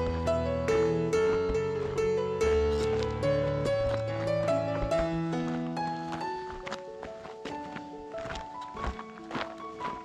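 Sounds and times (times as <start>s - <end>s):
instrumental music with held notes: 0.0s - 10.0s.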